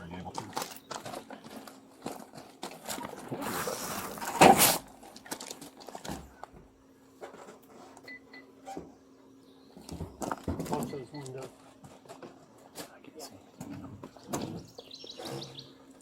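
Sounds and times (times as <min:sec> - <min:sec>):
loud rubbing: 0:03.2 - 0:04.9.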